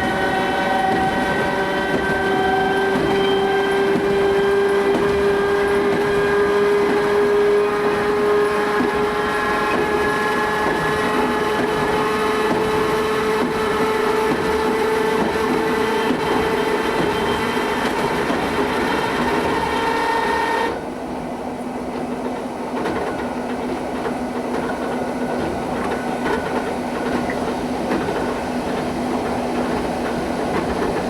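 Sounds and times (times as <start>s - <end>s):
electric train motors whining: 0.0s - 21.0s
train wheels rumbling on track: 0.0s - 31.0s.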